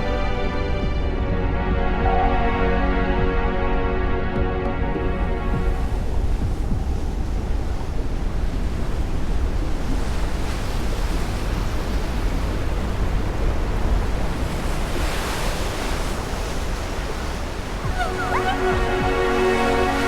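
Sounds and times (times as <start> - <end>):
rushing noise with deep rumble: 0.0 - 20.0.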